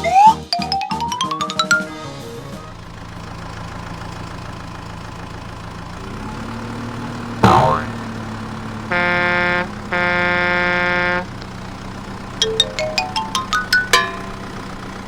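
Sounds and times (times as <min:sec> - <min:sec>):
steady engine hum: 0:02.0 - 0:15.0
rising run of plucked notes: 0:07.2 - 0:15.0
long horn-like beeps: 0:08.8 - 0:11.4.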